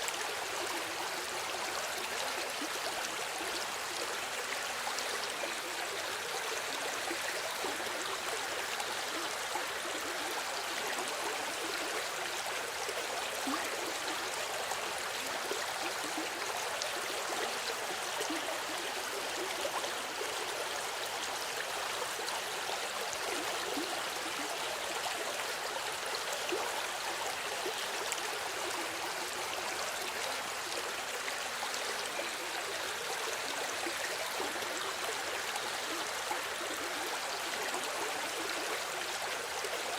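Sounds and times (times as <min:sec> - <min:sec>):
river flowing over stones: 0:00.0 - 0:39.9.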